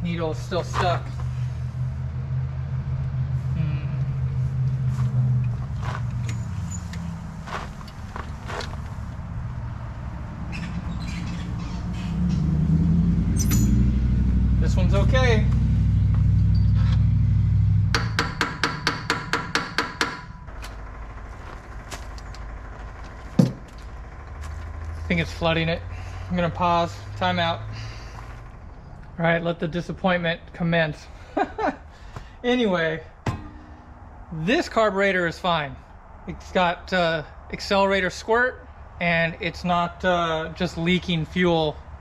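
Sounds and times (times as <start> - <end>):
fuel pump humming: 0.2 - 29.2, 33.1 - 34.4
sharp metallic taps: 17.9 - 20.4.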